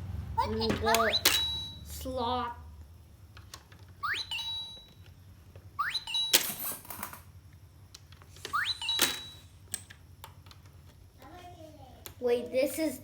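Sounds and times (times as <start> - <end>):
electronic rising chirp and beep: 0.9 - 2.0, 4.0 - 5.0, 5.8 - 6.5, 8.4 - 9.5.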